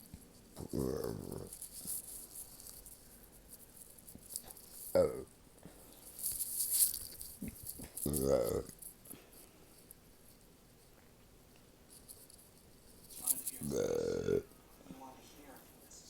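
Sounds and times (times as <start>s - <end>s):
person burping: 0.6s - 1.5s, 5.0s - 5.3s, 8.0s - 8.8s, 13.6s - 14.5s.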